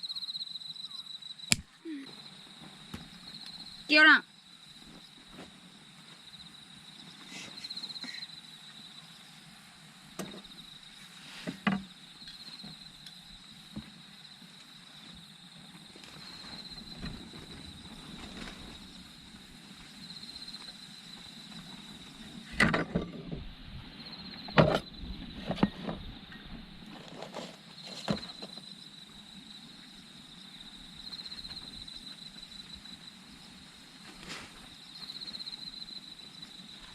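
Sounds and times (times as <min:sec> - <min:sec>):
insects singing: 0:00.0 - 0:22.5
knocks and scrapes of wood and tools: 0:11.2 - 0:12.9, 0:22.4 - 0:23.5, 0:24.5 - 0:28.7, 0:34.1 - 0:34.7.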